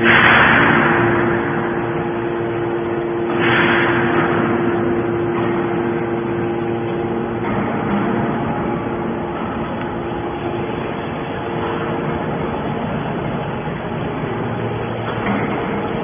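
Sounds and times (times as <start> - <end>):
baler machine hum: 0.0 - 16.0
loud noisy swells: 0.0 - 16.0.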